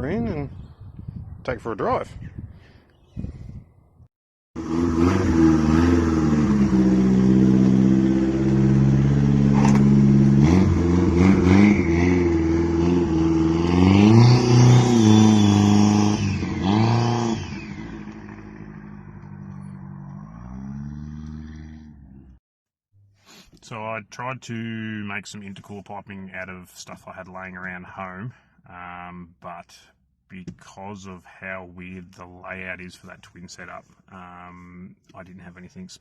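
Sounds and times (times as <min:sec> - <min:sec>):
car engine revving: 0:04.6 - 0:22.4.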